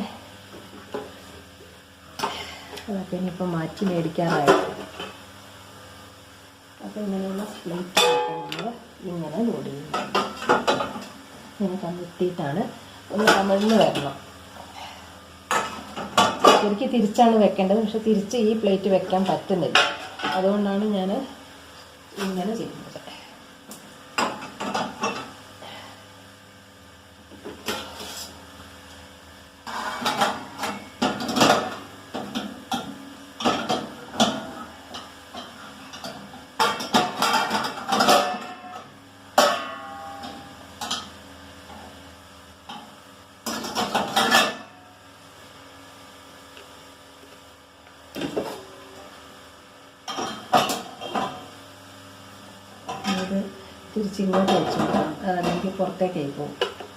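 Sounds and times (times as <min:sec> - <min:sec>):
plates clattering in rack: 0:08.0 - 0:08.5.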